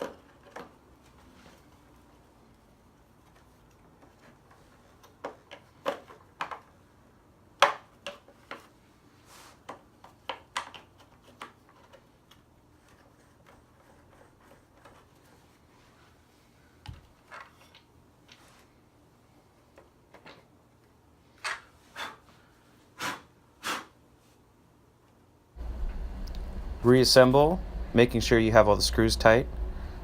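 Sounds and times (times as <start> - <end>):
vacuum parts clicking and knocking: 0.0 - 0.8, 3.7 - 6.8, 9.6 - 12.4.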